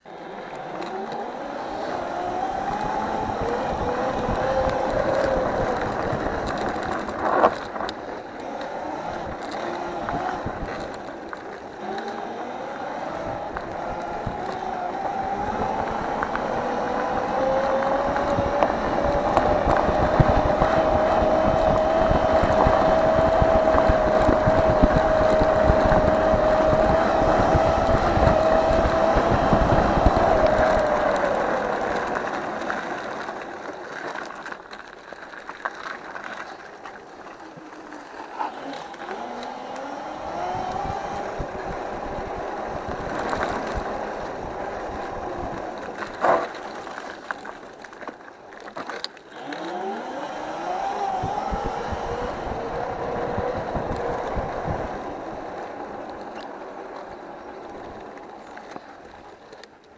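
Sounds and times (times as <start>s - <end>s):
engine revving: 0.5s - 7.7s, 11.7s - 33.3s, 38.3s - 46.4s, 49.3s - 55.4s.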